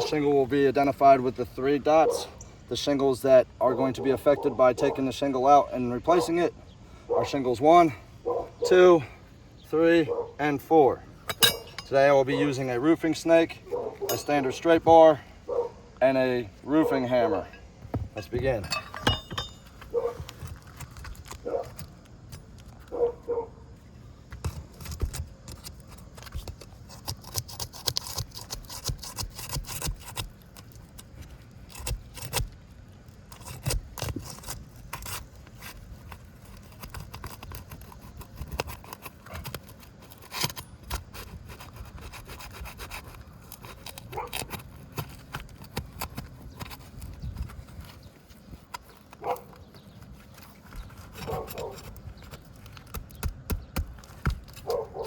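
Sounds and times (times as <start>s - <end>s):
metal bar scraping under shingles: 10.7s - 23.1s, 24.4s - 53.2s
clicks and knocks of shingles: 17.8s - 23.1s.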